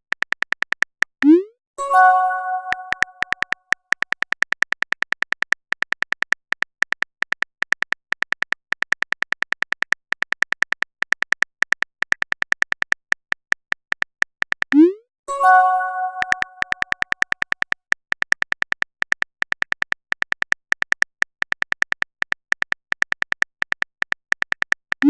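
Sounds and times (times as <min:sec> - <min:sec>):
rapid high typing beeps: 0:02.2 - 0:06.2, 0:14.5 - 0:15.0, 0:15.6 - 0:17.6.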